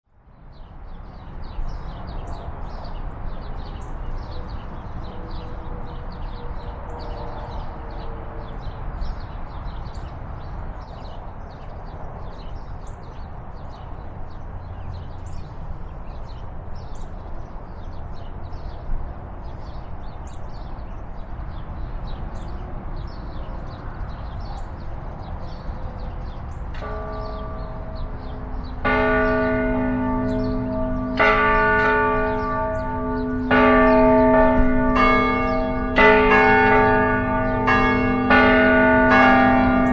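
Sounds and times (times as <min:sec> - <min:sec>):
distant church bells ringing: 0:10.9 - 0:21.3, 0:26.6 - 0:39.9.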